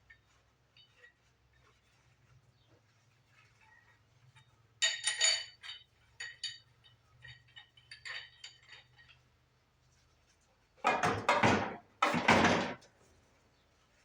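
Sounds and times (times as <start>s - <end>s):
metal clinking with ringing: 4.8s - 9.2s.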